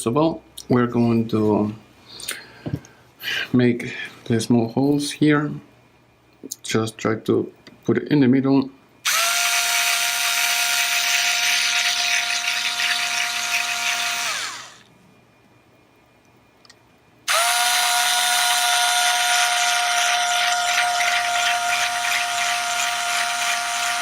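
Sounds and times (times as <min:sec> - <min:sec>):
electric rotary tool whining: 0:09.1 - 0:14.9, 0:17.3 - 0:24.0.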